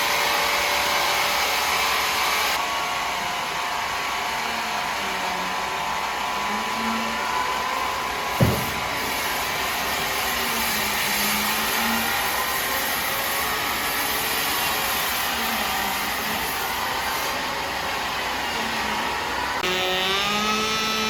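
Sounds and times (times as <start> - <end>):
woodworking machinery running: 0.0 - 21.0
sharp knock: 8.4 - 9.2.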